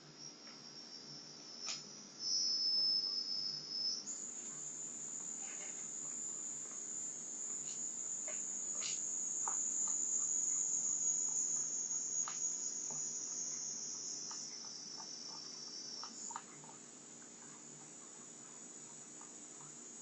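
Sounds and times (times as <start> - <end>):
shrill insect buzz: 0.0 - 16.7
faint ticks: 7.5 - 10.6, 11.2 - 19.8.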